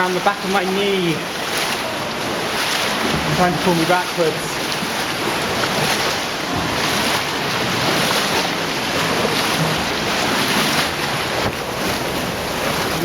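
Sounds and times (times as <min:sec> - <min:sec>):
roar of rushing floodwater: 0:00.0 - 0:13.0
water pouring around wading legs: 0:01.2 - 0:13.0.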